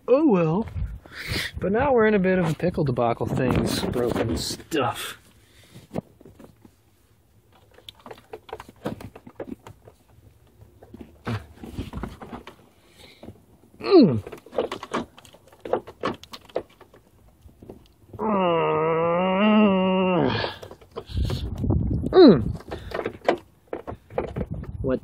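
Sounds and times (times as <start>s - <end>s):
hood latch clicks and rattles: 14.2s - 18.0s.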